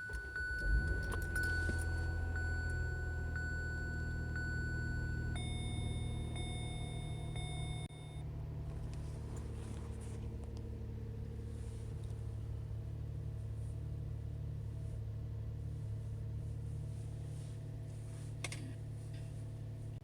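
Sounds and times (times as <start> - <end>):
car engine idling: 0.0 - 19.9.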